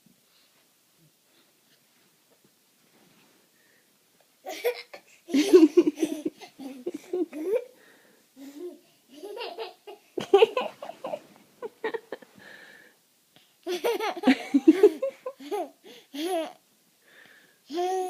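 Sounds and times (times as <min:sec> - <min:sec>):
small child laughing: 0:04.4 - 0:07.7, 0:08.4 - 0:12.2, 0:13.6 - 0:16.6.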